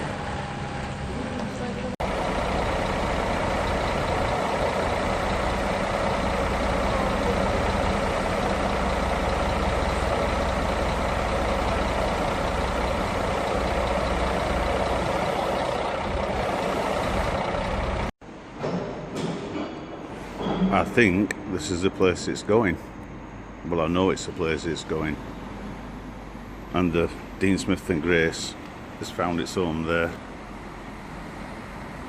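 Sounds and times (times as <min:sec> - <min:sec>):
engine idling: 0:00.0 - 0:18.2.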